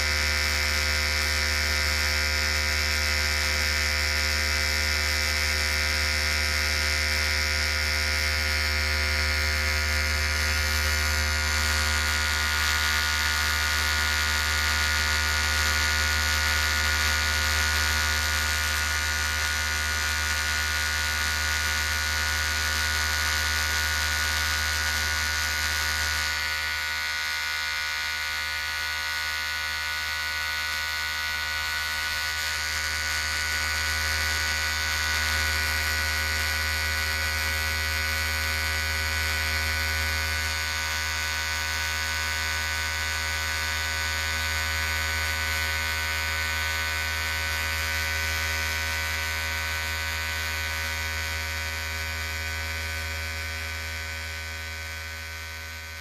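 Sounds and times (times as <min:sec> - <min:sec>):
electric hair clipper buzzing: 0:00.0 - 0:56.0.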